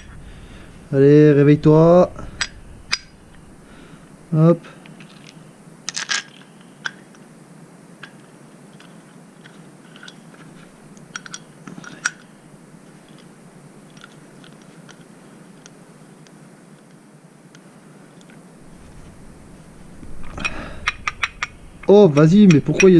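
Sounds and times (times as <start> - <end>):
clinks of screws and washers: 2.3 - 3.2, 4.8 - 7.0, 8.8 - 12.3, 13.9 - 15.0, 20.1 - 22.9.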